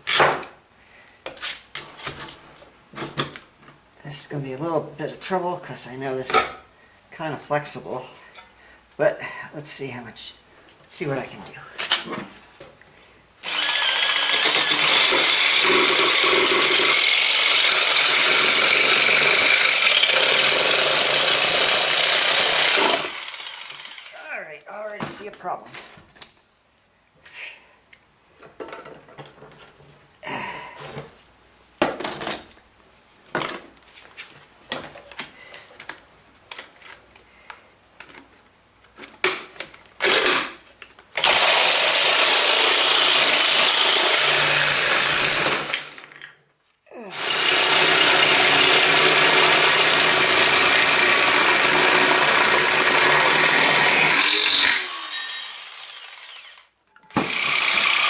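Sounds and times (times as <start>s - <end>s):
jigsaw cutting sheet metal: 13.4s - 24.2s, 40.0s - 40.6s, 41.2s - 46.2s, 47.1s - 58.0s.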